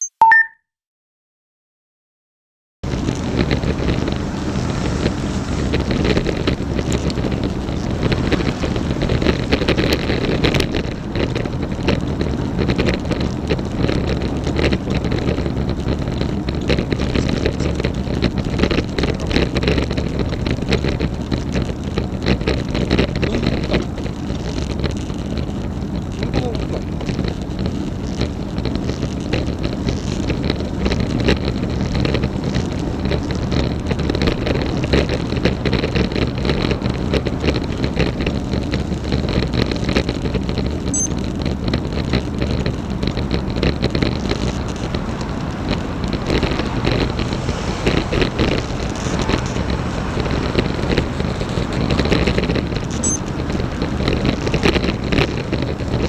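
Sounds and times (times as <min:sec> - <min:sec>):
road noise: 0:02.8 - 0:56.0
wind buffeting microphone: 0:02.8 - 0:56.0
bike clicks and squeaks: 0:40.9 - 0:41.2, 0:52.9 - 0:53.3.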